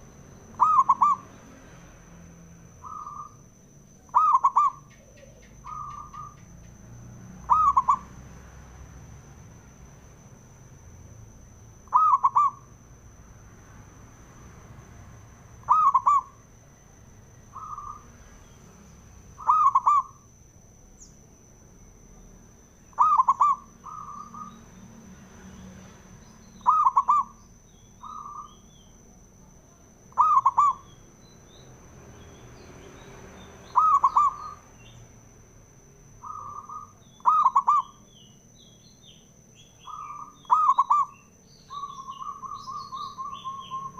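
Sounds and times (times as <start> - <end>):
dove cooing: 0.5 - 1.4, 2.8 - 3.5, 4.1 - 6.5, 7.4 - 8.2, 11.9 - 12.7, 15.6 - 16.4, 17.5 - 18.1, 19.4 - 20.2, 22.9 - 24.6, 26.6 - 27.4, 28.0 - 28.6, 30.1 - 30.9, 33.7 - 34.6, 36.2 - 38.0, 39.8 - 43.9.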